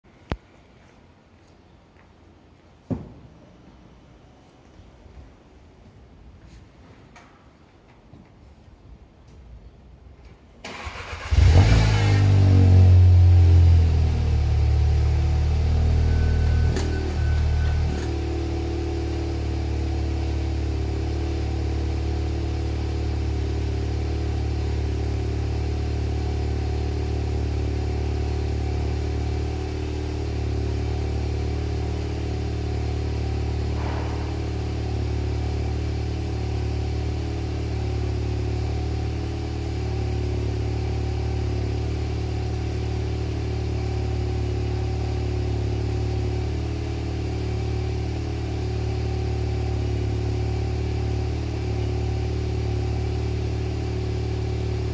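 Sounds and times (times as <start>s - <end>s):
car engine idling: 10.7s - 54.9s.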